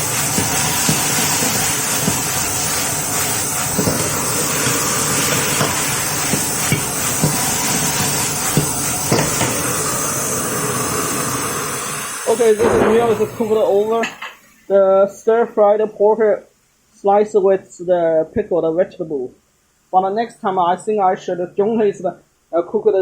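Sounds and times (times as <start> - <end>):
food sizzling in a pan: 0.0 - 14.7.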